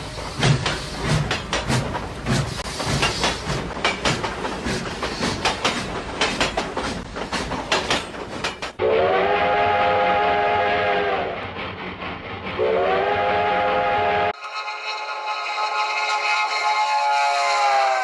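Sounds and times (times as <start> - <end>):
train wheels clattering: 0.0 - 8.8, 11.2 - 12.8
multi-note train whistle: 8.8 - 11.4, 12.6 - 18.0.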